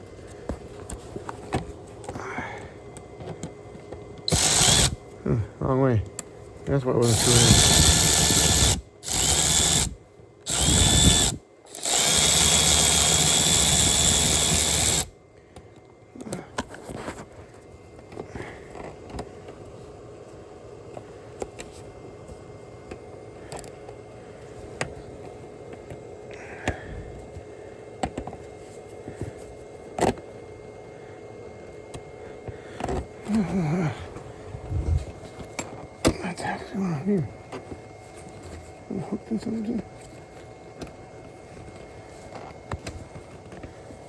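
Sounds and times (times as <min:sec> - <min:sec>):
power drill running: 0:04.3 - 0:05.0, 0:07.0 - 0:15.1.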